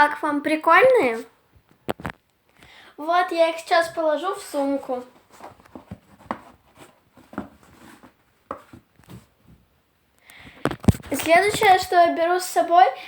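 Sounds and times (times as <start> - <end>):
faint rustling: 3.4 - 9.7, 10.3 - 12.1.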